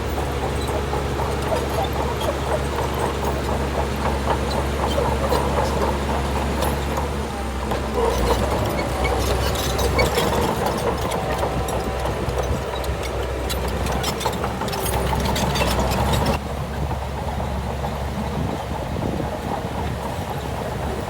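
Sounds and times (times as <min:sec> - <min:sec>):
heavy diesel engine running: 0:00.0 - 0:21.0
sharp clicks and rattles: 0:00.1 - 0:16.4.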